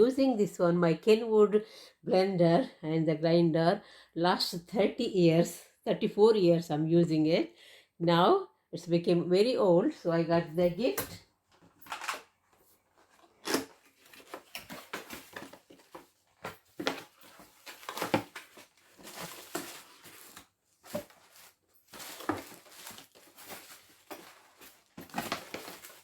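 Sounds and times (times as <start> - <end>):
packaging rustling and crinkling: 11.5 - 26.0.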